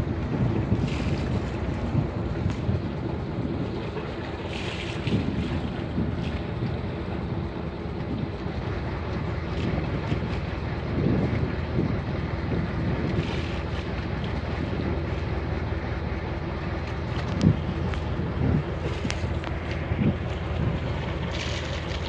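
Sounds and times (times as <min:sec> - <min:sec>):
boat engine low hum: 0:00.0 - 0:22.0
wind buffeting microphone: 0:00.0 - 0:22.0.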